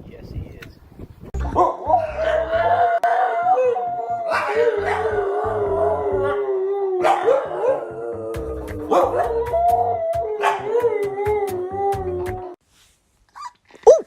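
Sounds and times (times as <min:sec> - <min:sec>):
music with low beat: 0:01.4 - 0:03.6, 0:08.3 - 0:12.6
dog howling: 0:01.8 - 0:12.6.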